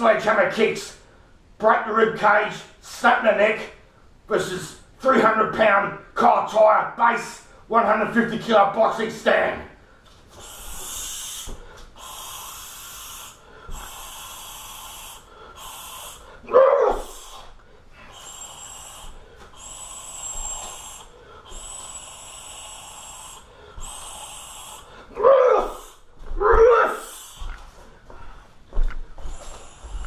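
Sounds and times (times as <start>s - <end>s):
person breathing hard: 9.8s - 30.0s
voiced grunts: 25.1s - 27.2s.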